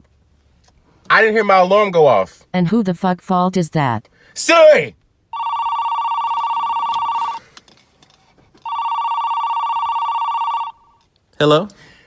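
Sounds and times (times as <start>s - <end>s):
warbling phone ringing: 5.4s - 7.4s, 8.6s - 11.0s.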